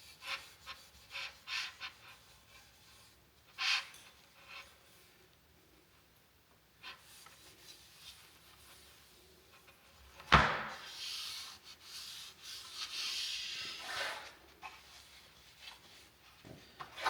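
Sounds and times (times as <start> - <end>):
sharp wooden knock: 10.3 - 10.8
cloth rubbing on wood: 10.6 - 16.2.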